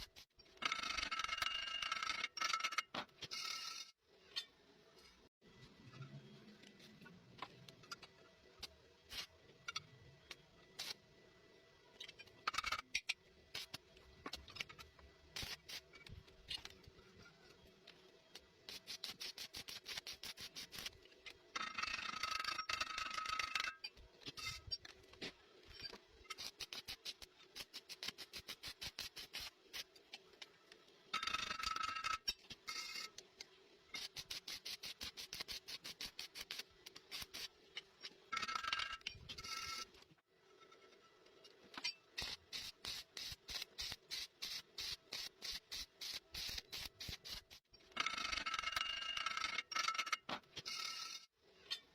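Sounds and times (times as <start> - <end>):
welding arc crackling: 42.2 - 47.6.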